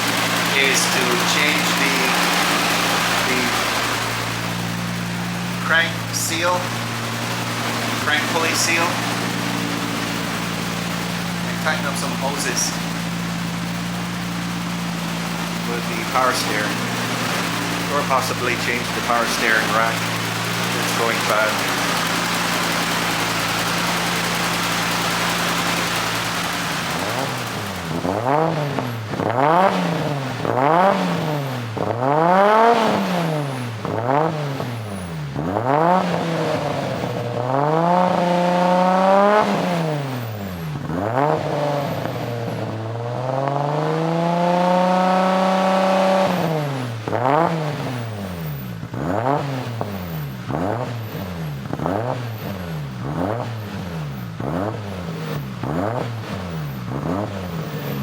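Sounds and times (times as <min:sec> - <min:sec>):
car engine revving: 0:00.0 - 0:58.0.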